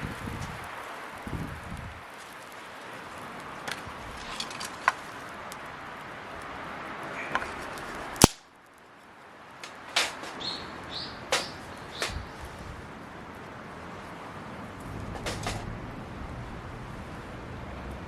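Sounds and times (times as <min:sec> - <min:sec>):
steady hiss: 0:00.0 - 0:18.0
wood fire crackling: 0:00.0 - 0:18.0
sharp pops: 0:07.2 - 0:08.6, 0:09.6 - 0:12.8, 0:14.8 - 0:15.9.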